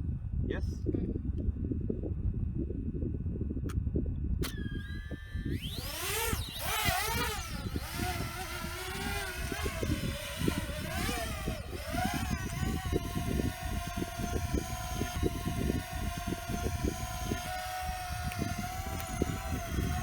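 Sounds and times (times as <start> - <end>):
wind buffeting microphone: 0.0 - 20.0
drone propellers whining: 4.4 - 20.0.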